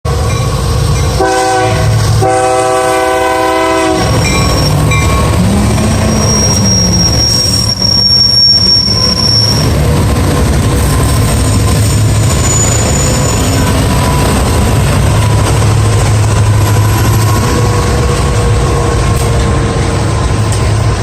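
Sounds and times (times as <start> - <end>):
diesel locomotive engines rumbling: 0.1 - 21.0
train air horn blasts: 1.2 - 4.4
thin high squeal: 6.0 - 9.7, 12.3 - 13.7.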